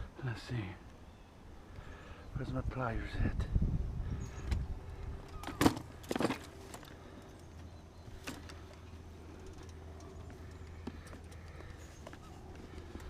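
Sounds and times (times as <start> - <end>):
steady low hum: 0.0 - 13.0
fishing gear rattling: 5.4 - 13.0.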